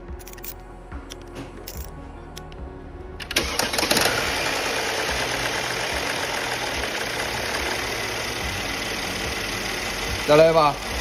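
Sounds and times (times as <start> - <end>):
car engine cranking and idling: 3.2 - 11.0.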